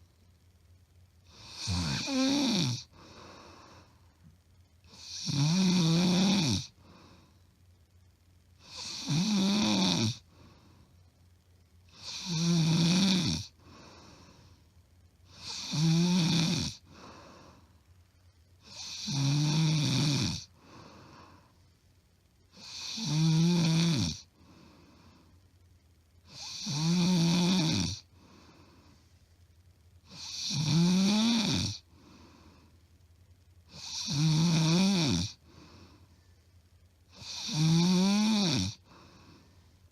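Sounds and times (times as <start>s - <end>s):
woman snoring loudly: 1.3s - 3.8s, 4.9s - 6.8s, 8.6s - 10.2s, 11.9s - 14.0s, 15.3s - 17.6s, 18.6s - 21.3s, 22.6s - 24.3s, 26.3s - 28.1s, 30.1s - 31.8s, 33.7s - 35.5s, 37.2s - 39.0s.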